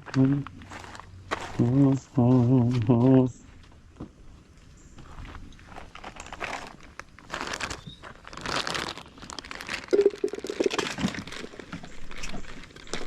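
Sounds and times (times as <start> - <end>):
packaging crinkling and rustling: 0.0 - 1.8, 5.6 - 13.0.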